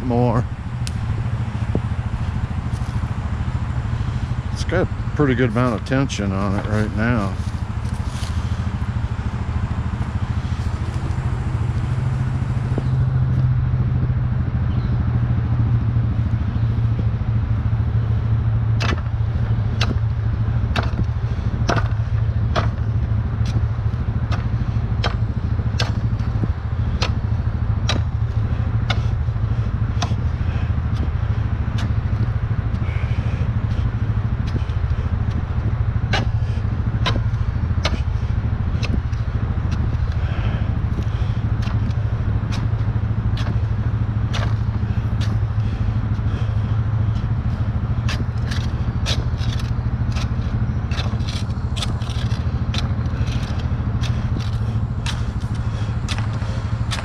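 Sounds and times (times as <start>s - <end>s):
engine idling: 0.0s - 57.0s
sharp clicks: 48.0s - 57.0s.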